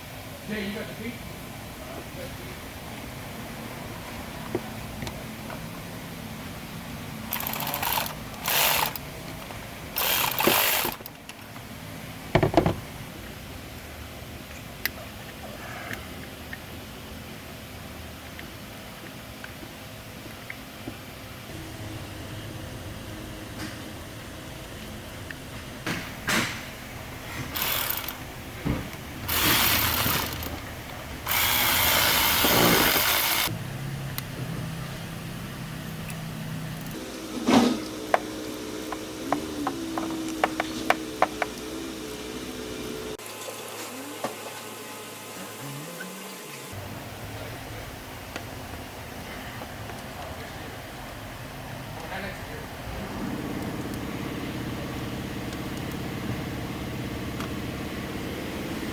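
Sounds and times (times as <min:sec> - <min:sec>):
ratchet wrench clicking: 0:07.3 - 0:09.1, 0:10.0 - 0:11.1, 0:27.5 - 0:28.3, 0:28.9 - 0:30.6, 0:31.2 - 0:33.5.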